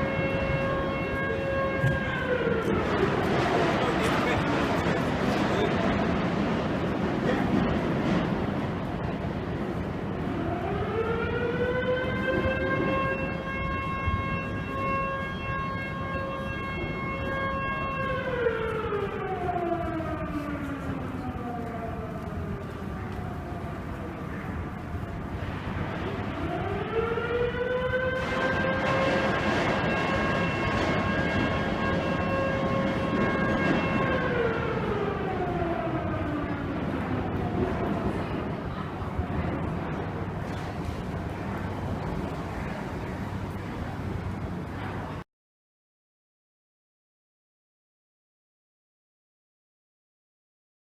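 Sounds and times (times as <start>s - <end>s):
distant factory siren: 0.0s - 45.2s
steady background rumble: 35.2s - 45.2s.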